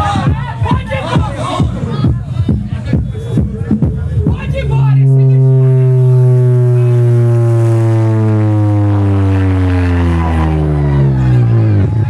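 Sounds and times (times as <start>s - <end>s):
deep sustained test tone: 4.1s - 12.0s.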